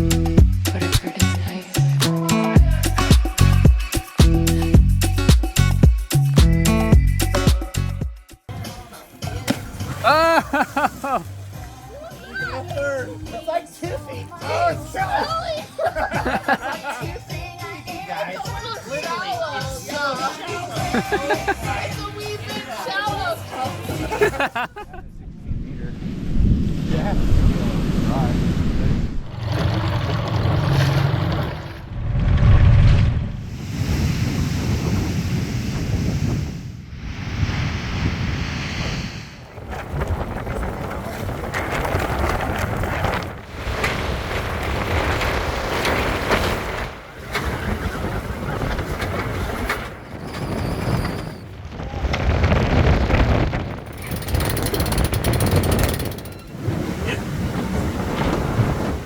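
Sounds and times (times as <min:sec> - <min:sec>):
rushing water and waves: 0:09.0 - 0:13.7, 0:25.9 - 0:51.4, 0:53.5 - 0:59.0
wind buffeting microphone: 0:24.6 - 0:59.0
heavy low rumble: 0:24.8 - 0:43.3.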